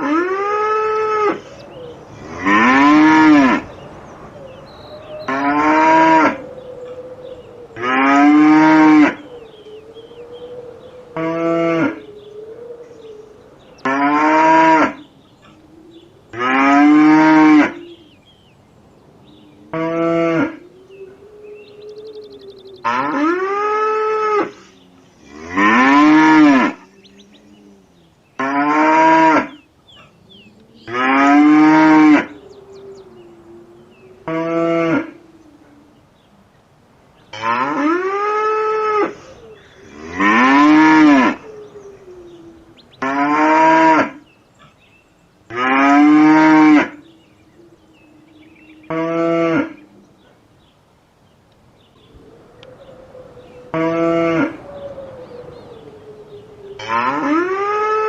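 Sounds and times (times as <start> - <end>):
cows mooing loudly: 0.0 - 4.2, 5.2 - 6.4, 7.8 - 9.3, 11.2 - 12.0, 13.8 - 15.1, 16.3 - 17.8, 22.8 - 27.4, 28.4 - 29.6, 30.8 - 32.4, 34.2 - 35.2, 37.3 - 41.5, 43.0 - 44.2, 45.5 - 47.0, 48.9 - 49.8, 53.7 - 54.6, 56.8 - 58.0
quiet low moos: 0.0 - 58.0.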